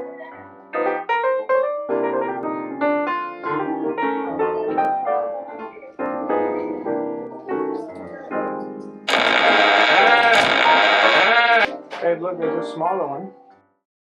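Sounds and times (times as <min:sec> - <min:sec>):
background piano music: 0:00.0 - 0:09.1, 0:11.7 - 0:13.8.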